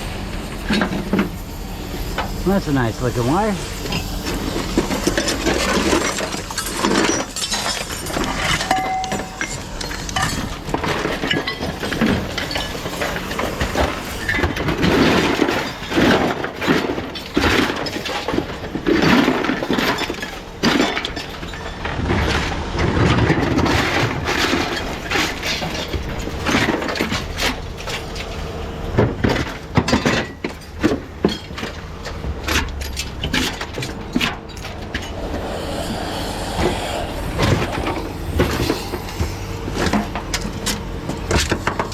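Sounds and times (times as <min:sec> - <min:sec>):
scrap clattering and clinking: 0:03.8 - 0:35.2.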